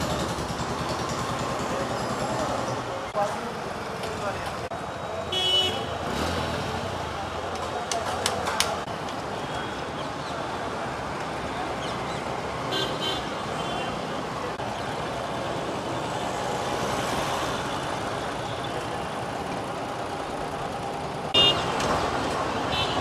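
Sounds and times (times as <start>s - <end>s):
road traffic noise: 0.0s - 23.0s
vehicle horn tooting: 5.3s - 5.9s, 21.4s - 21.7s.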